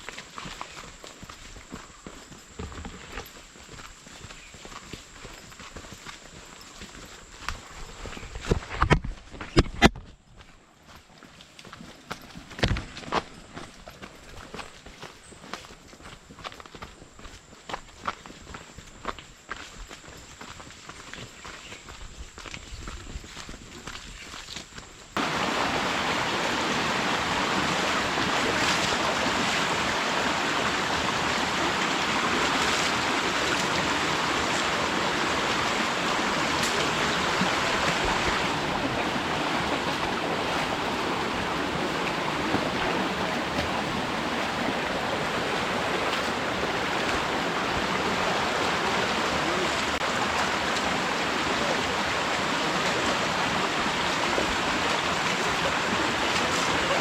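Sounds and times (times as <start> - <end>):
flowing water rushing: 25.2 - 57.0.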